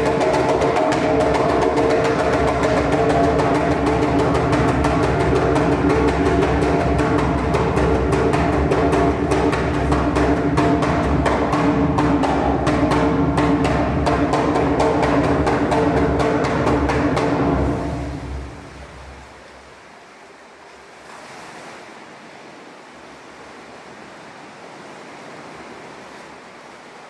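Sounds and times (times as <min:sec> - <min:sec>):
fast percussion beat: 0:00.0 - 0:19.3
sustained droning tones: 0:00.0 - 0:19.4.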